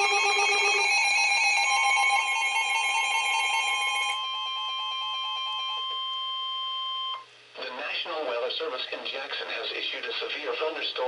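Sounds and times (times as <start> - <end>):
steady warning alarm tone: 0.0 - 7.2
warbling electronic alarm beeps: 0.0 - 7.2.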